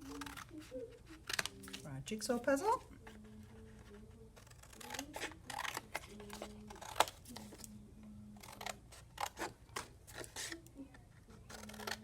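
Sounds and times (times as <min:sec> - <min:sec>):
scissors snipping cardboard: 0:00.0 - 0:01.8, 0:03.8 - 0:07.7, 0:08.4 - 0:10.7, 0:11.3 - 0:12.0.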